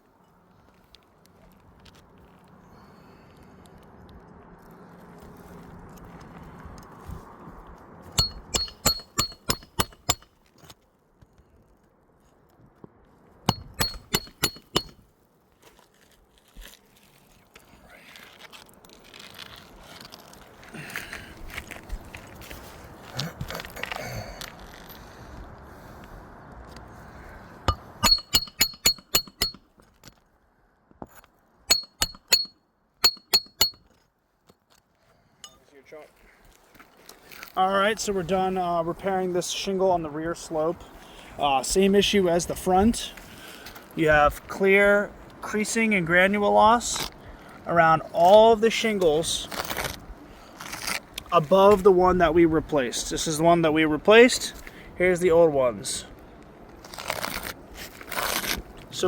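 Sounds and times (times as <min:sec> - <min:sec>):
hammer blows on metal: 0:08.2 - 0:10.3, 0:13.5 - 0:15.0, 0:27.7 - 0:29.6, 0:31.7 - 0:33.8.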